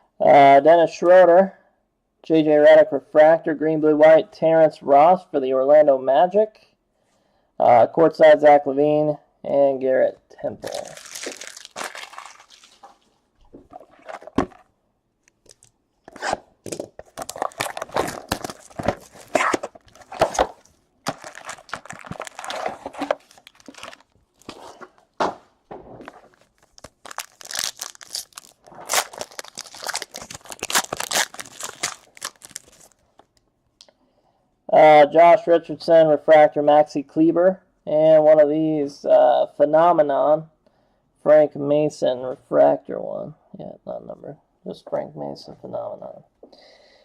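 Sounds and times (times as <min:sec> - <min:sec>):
card pack wrappers tearing: 0:10.6 - 0:13.1, 0:13.7 - 0:14.6, 0:15.3 - 0:24.9, 0:26.0 - 0:33.3.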